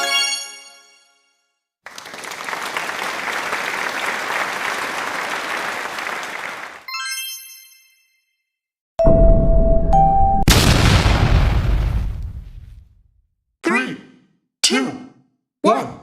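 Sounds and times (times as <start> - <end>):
crowd clapping: 1.9 - 6.9.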